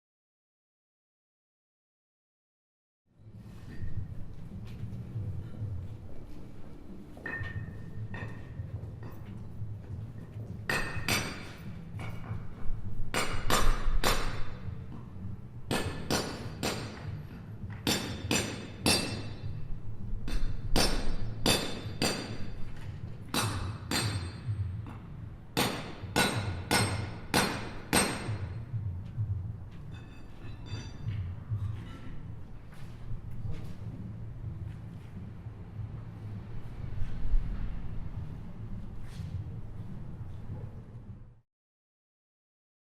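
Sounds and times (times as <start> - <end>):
steady low hum: 3.2 - 10.7, 19.0 - 41.4
ringing hammer strikes: 7.2 - 9.2, 17.8 - 19.6, 23.3 - 28.7, 29.9 - 32.1.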